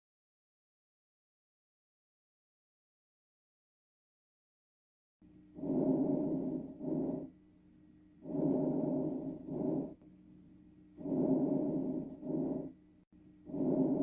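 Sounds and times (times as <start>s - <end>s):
faint steady hum: 5.2s - 14.0s
lung breath sounds: 5.6s - 7.3s, 8.2s - 10.0s, 11.0s - 12.8s, 13.4s - 14.0s.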